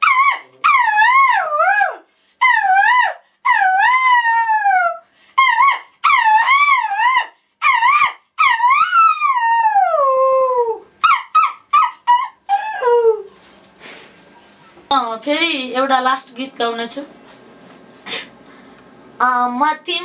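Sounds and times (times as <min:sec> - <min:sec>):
boy imitating jackal howls: 0:00.0 - 0:13.3.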